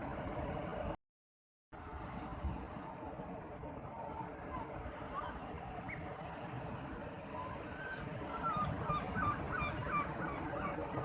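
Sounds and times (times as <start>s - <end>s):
sea waves: 0.0s - 1.0s, 1.8s - 11.0s.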